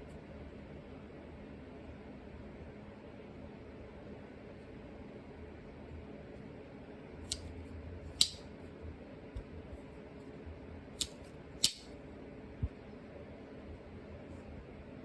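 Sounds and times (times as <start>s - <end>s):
pocket knife blades clicking: 8.2s - 8.4s, 11.0s - 11.9s.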